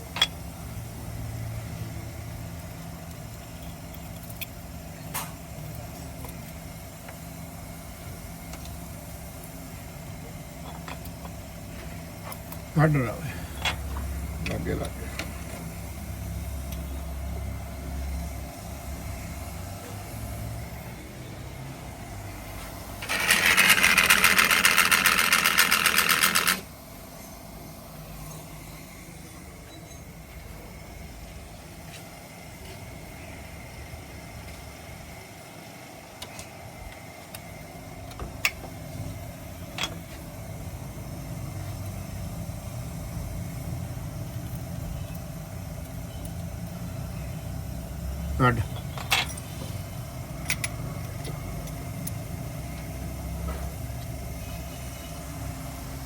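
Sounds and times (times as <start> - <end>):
power tool rattling: 23.0 - 26.7.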